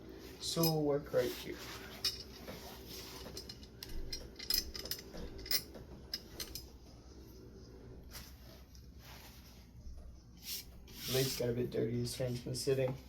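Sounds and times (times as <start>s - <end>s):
metal parts clicking and clinking: 1.9s - 6.7s.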